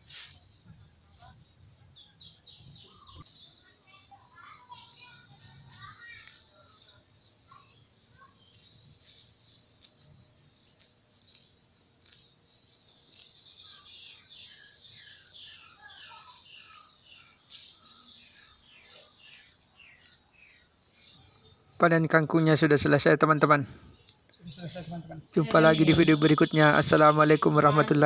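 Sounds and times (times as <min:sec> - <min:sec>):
high-pitched insect trill: 0:00.0 - 0:28.0
birds chirping: 0:21.2 - 0:28.0.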